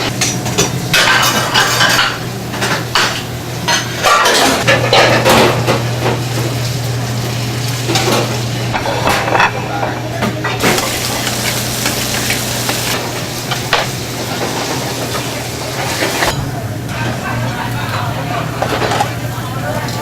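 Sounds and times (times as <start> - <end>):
food sizzling in a pan: 0.0 - 9.7, 10.6 - 16.4.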